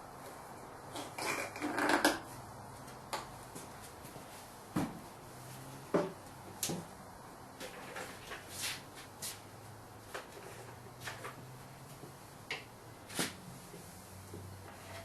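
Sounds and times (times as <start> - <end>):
clatter of hard objects: 1.0 - 2.2.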